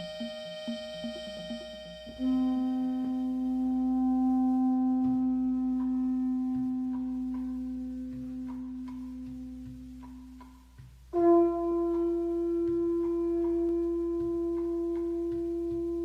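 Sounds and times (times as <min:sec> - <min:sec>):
loud held low note: 0:00.0 - 0:09.9
instrumental music: 0:00.0 - 0:16.0
light percussion taps: 0:05.0 - 0:16.0.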